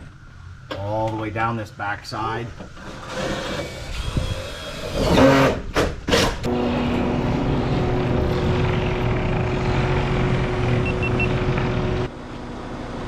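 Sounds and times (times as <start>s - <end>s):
crane engine running: 6.5s - 13.0s.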